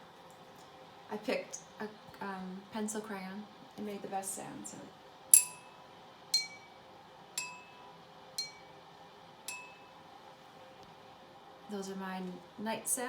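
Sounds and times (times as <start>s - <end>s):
pencil crayon tapping ringing object: 5.4s - 5.7s, 7.4s - 7.8s, 8.4s - 8.7s, 9.5s - 9.9s.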